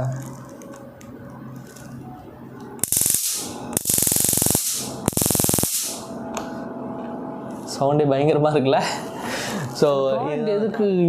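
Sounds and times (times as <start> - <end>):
stun gun electric crackling: 2.8 - 6.1.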